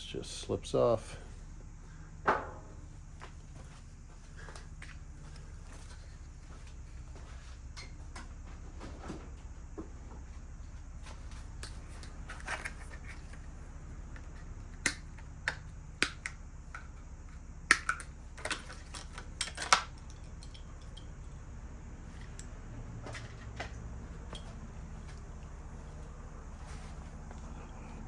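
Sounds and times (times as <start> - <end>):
bike parts clicking and knocking: 11.1 - 21.3, 22.1 - 24.6.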